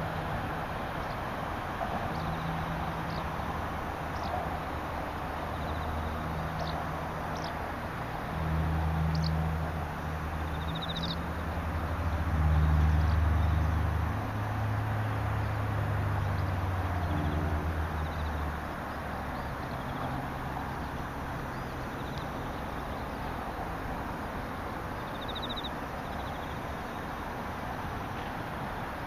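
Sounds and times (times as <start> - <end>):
birds calling: 5.5 - 7.6, 16.2 - 27.3
insects hissing: 18.0 - 28.9.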